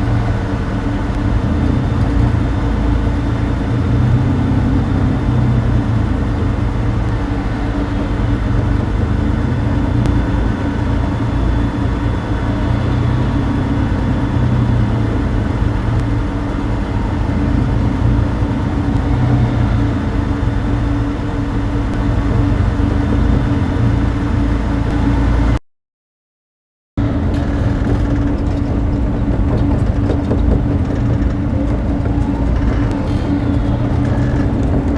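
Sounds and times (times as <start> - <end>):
deep engine drone inside vehicle: 0.0 - 25.6, 27.0 - 34.9.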